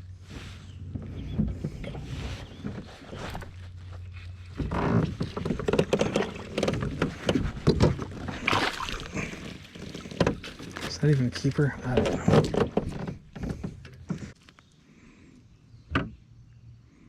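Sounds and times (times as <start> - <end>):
gear knocking and rattling in kayak: 0.7 - 14.4.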